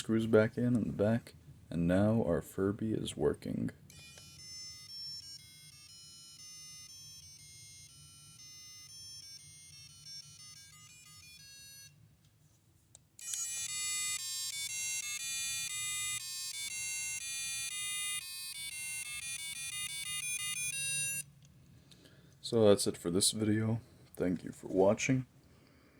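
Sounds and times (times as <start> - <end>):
toy playing electronic beeping tune: 3.9 - 12.0, 13.2 - 21.3.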